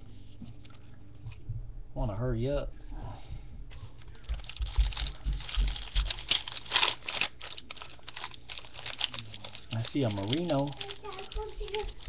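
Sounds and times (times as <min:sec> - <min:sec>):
soft low thumps: 0:01.2 - 0:02.0, 0:03.0 - 0:06.2
card wrapper crinkling: 0:03.7 - 0:12.0.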